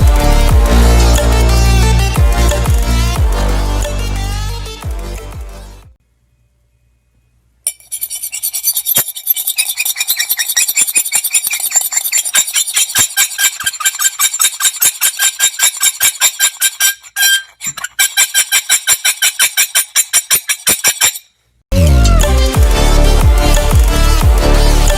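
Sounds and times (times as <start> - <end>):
hard object scraping hard surface: 0.0 - 4.6, 7.7 - 21.2.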